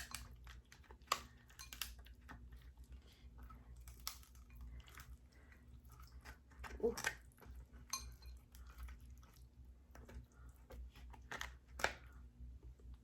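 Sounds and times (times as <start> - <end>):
crab shells cracking: 3.8 - 5.1, 11.2 - 12.1.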